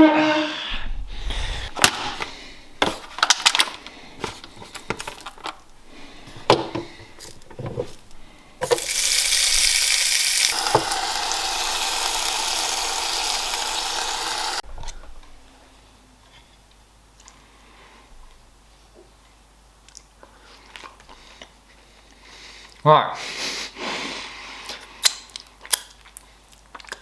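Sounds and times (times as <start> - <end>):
kitchen handling clicks and knocks: 6.3 - 8.8
bacon sizzling in a pan: 8.0 - 14.6.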